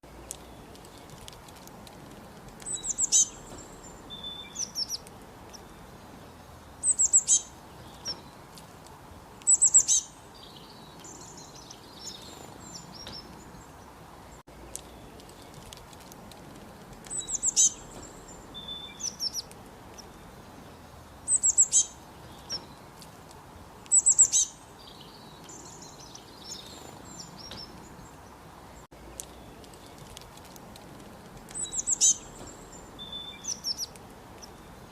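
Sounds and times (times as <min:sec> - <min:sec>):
background hiss: 0:00.0 - 0:34.9
songbirds chirping: 0:00.0 - 0:34.9.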